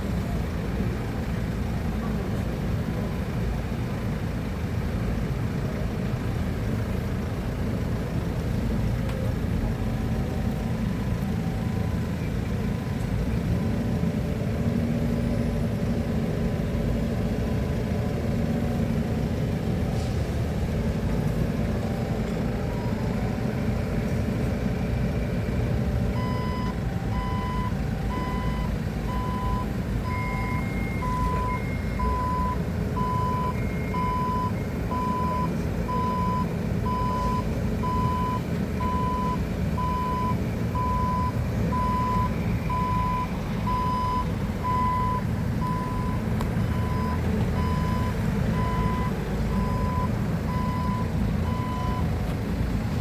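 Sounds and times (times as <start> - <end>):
forklift engine running: 0.0 - 53.0
reversing alarm beeping: 26.1 - 52.2.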